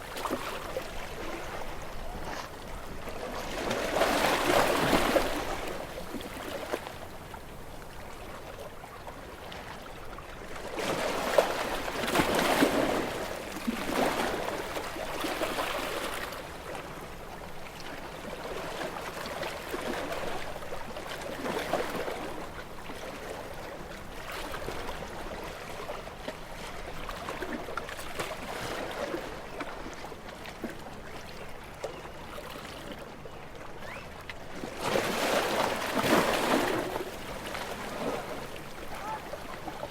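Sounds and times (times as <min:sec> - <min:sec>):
sea waves breaking against rocks: 0:00.0 - 0:07.4, 0:33.9 - 0:39.9.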